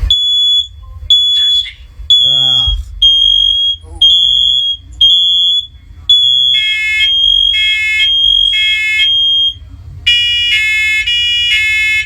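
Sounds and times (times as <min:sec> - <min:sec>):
high piercing alarm tone: 0:00.0 - 0:09.6
shrill buzzy alarm beeps: 0:00.0 - 0:12.0.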